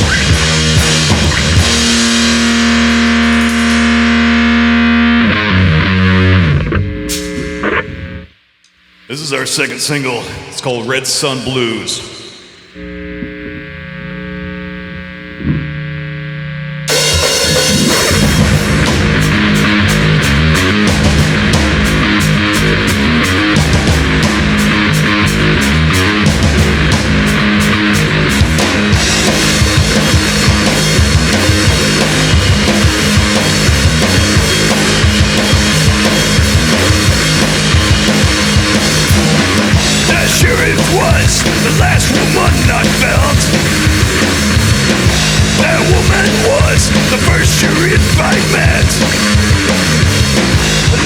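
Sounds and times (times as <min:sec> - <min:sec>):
drum kit and cymbals: 0:00.0 - 0:04.3, 0:07.0 - 0:08.0, 0:16.9 - 0:51.0
rock band playing: 0:00.0 - 0:08.2, 0:16.9 - 0:51.0
bass guitar: 0:00.0 - 0:08.4, 0:12.7 - 0:51.0
distorted guitars: 0:00.0 - 0:51.0.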